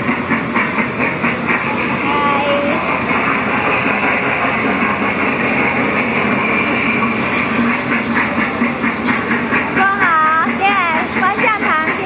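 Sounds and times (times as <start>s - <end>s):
kiddie ride train rumbling: 0.0s - 12.0s.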